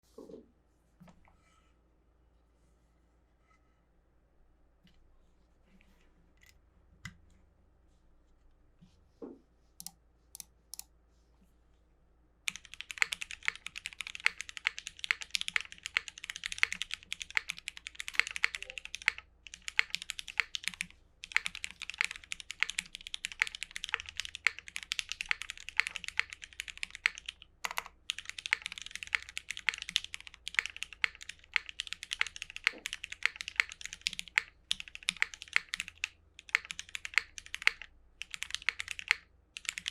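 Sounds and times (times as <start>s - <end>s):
typing on mechanical keyboard: 12.5s - 39.9s.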